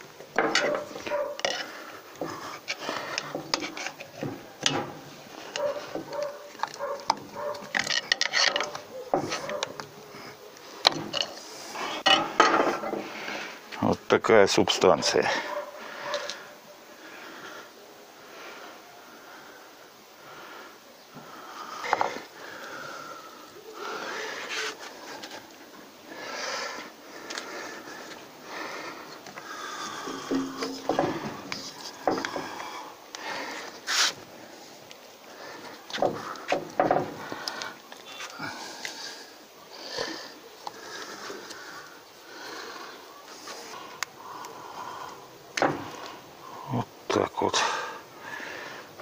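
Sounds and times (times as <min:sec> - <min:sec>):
hand tools scraping and clicking: 0:00.2 - 0:10.0, 0:10.8 - 0:13.1, 0:29.1 - 0:32.7
short scraping sounds: 0:33.8 - 0:34.2.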